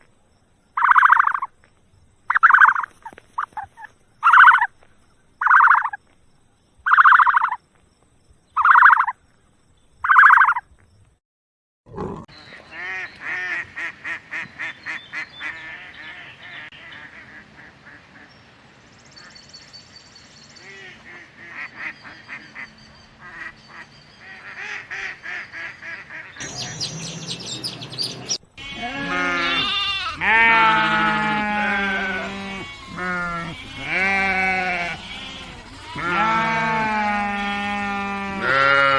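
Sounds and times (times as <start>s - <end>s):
poultry calling: 0.8s - 1.5s, 2.3s - 4.8s, 5.4s - 6.0s, 6.9s - 7.6s, 8.6s - 9.2s, 10.0s - 10.6s, 12.0s - 18.3s, 20.6s - 38.9s
turkey gobbling: 0.8s - 1.5s, 2.3s - 4.7s, 5.4s - 6.0s, 6.9s - 7.6s, 8.6s - 9.1s, 10.0s - 10.6s
livestock bleating: 28.6s - 38.9s.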